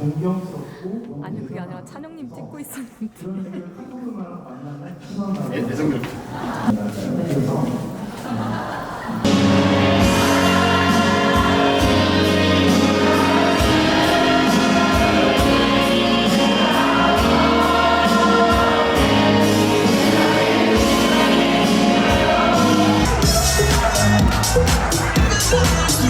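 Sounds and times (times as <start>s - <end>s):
music with singing voices: 9.3s - 26.0s
steady drum beat: 9.3s - 26.0s.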